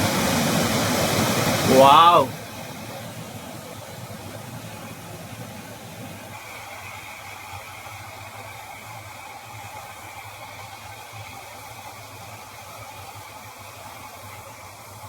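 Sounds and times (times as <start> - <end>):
waterfall rushing: 0.0 - 11.8.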